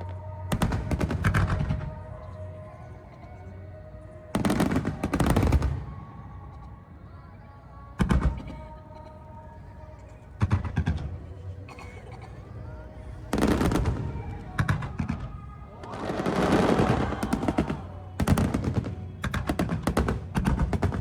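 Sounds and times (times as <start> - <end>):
music playing: 0.0 - 21.0
fireworks exploding: 0.5 - 1.8, 4.4 - 5.9, 13.3 - 21.0.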